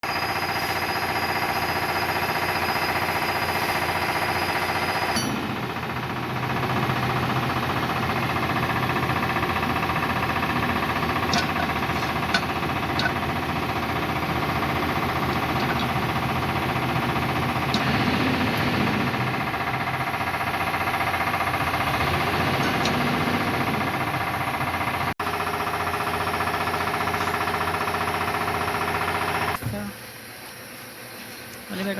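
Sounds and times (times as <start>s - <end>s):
lathe humming: 5.5s - 25.1s.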